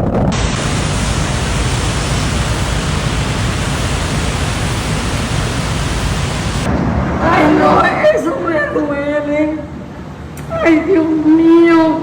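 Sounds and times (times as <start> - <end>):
rushing floodwater roar: 0.3 - 6.7.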